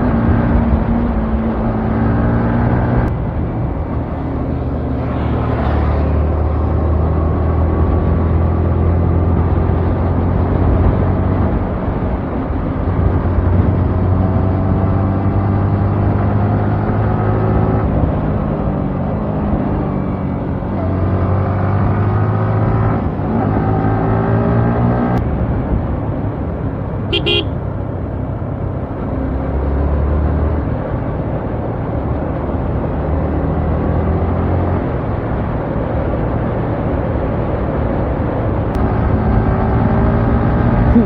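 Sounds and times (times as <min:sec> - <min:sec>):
wind and road noise: 0:00.0 - 0:41.0
horn beep: 0:27.1 - 0:27.6
motorcycle engine revving: 0:27.1 - 0:27.6.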